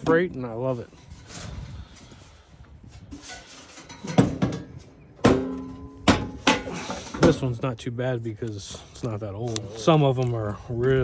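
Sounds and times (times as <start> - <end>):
metal knocking and clanking: 3.2 - 7.5.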